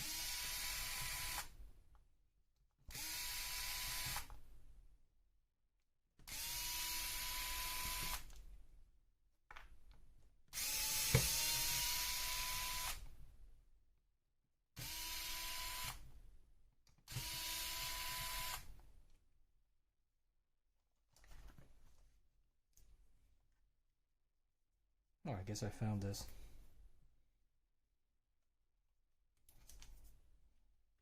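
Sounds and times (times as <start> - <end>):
power screwdriver motor whine: 17.1 - 18.7.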